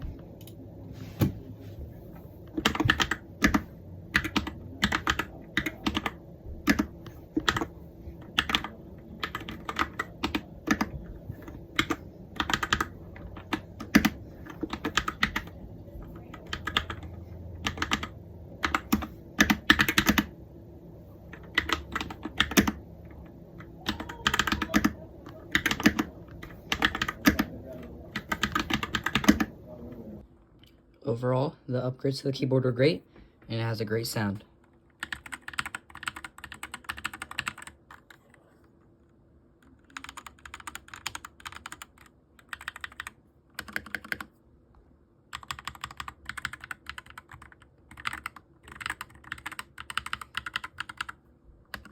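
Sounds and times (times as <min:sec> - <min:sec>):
mechanical keyboard typing: 0:02.5 - 0:20.3, 0:21.3 - 0:29.5, 0:34.9 - 0:38.3, 0:39.7 - 0:44.3, 0:45.3 - 0:51.9.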